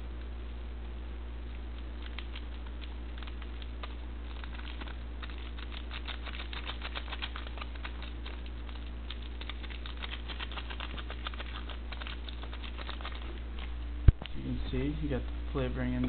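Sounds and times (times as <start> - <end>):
steady low hum: 0.0 - 16.0
seasoning packet crinkling: 2.1 - 13.3.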